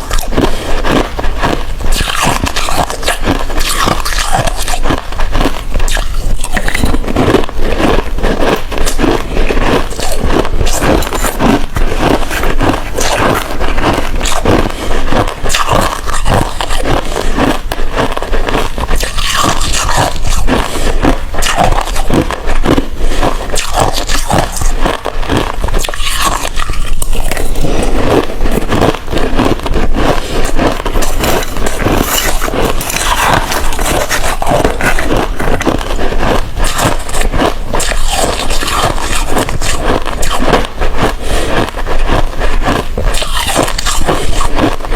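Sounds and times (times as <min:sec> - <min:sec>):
ice being crunched by chewing: 0:00.0 - 0:44.9.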